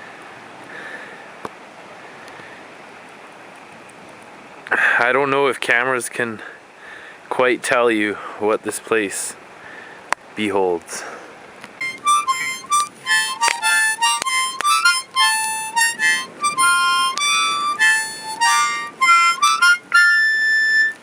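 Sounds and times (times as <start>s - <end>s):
harmonica playing: 11.8s - 21.0s.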